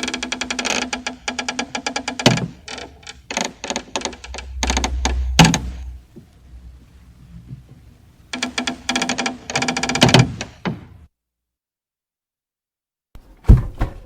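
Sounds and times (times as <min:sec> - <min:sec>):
heavy wooden knocks: 0:00.0 - 0:06.3, 0:13.2 - 0:14.0
wooden coffin creaking: 0:00.0 - 0:11.0
low rumble: 0:04.0 - 0:08.3.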